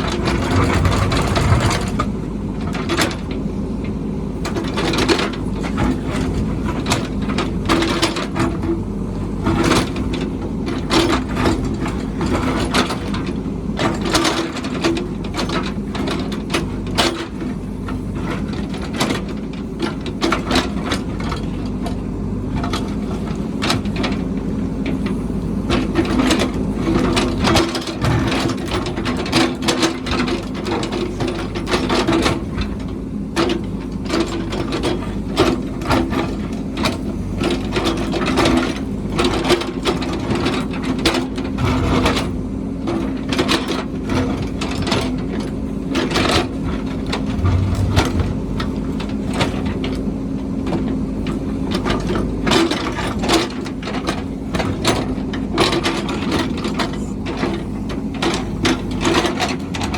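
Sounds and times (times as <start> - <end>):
diesel engine running: 0.0 - 3.8, 47.0 - 49.6.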